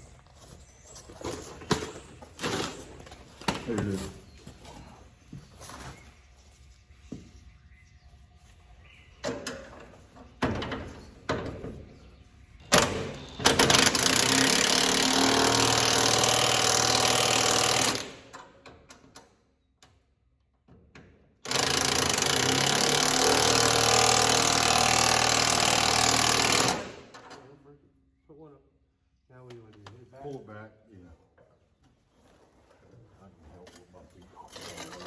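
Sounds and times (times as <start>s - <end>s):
impact wrench hammering: 21.5s - 27.1s.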